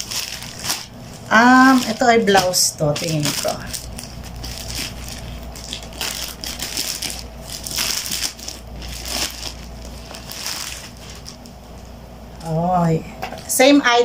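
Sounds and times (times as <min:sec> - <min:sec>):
packaging crinkling: 0:00.0 - 0:11.9.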